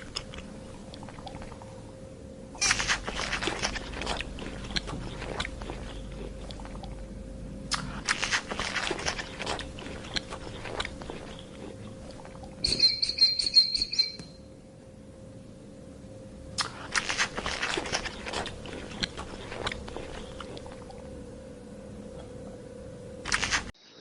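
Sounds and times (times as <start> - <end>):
animal crunching food: 2.6 - 7.0, 7.7 - 13.1, 16.6 - 21.1, 23.2 - 23.7
high-pitched chirping call: 12.6 - 14.5.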